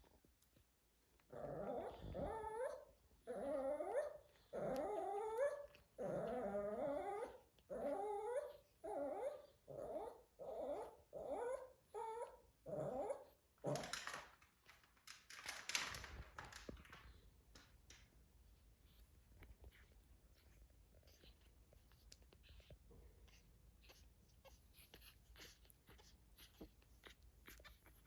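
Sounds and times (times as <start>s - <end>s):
dog whining: 1.3s - 13.9s.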